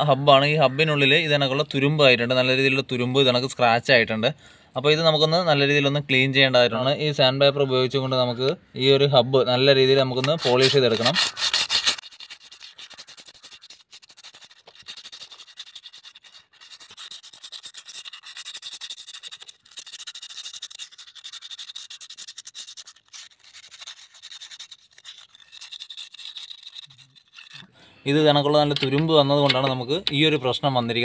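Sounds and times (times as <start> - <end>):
sandpaper scratching metal drum: 10.0 - 27.6.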